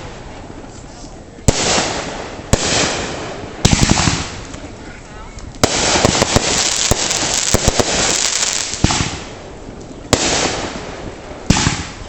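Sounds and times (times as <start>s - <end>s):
fireworks crackling and popping: 0.0s - 12.0s
fireworks bang: 1.5s - 4.5s, 5.6s - 9.4s, 10.1s - 12.0s.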